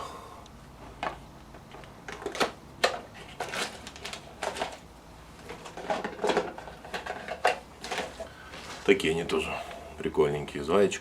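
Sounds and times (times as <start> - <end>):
plastic packaging crinkling: 2.2 - 9.4.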